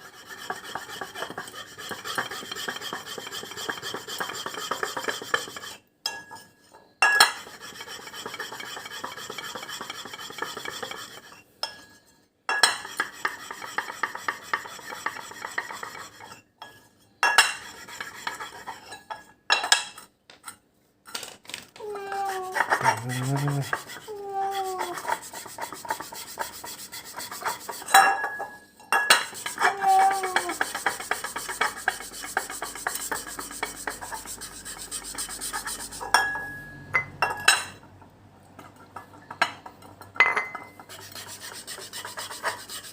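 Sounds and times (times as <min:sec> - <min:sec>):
scraping and rubbing: 0:00.0 - 0:05.8, 0:21.1 - 0:28.0, 0:29.2 - 0:36.2, 0:40.8 - 0:42.9.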